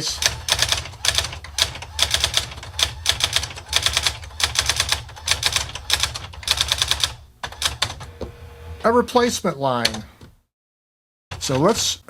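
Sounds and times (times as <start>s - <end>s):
typewriter clacking: 0.0s - 8.1s, 11.3s - 12.0s.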